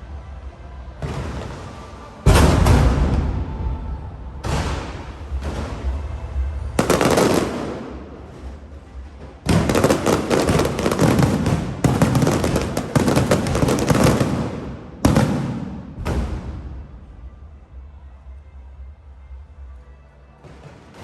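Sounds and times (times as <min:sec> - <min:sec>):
rapid fireworks crackling: 0:04.6 - 0:17.1
fireworks bursting: 0:06.8 - 0:17.1.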